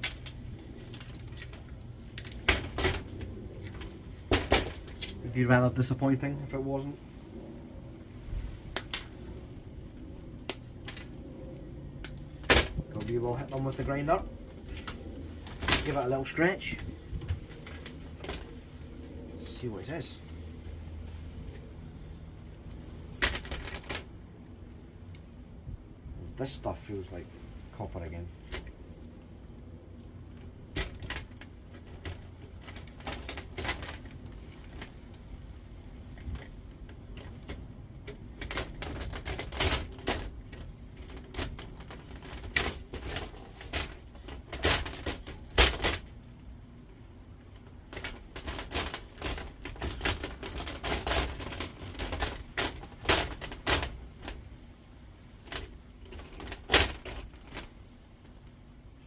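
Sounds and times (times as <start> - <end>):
scrap metal parts clicking and knocking: 30.7 - 35.0, 36.1 - 46.1, 47.5 - 57.8.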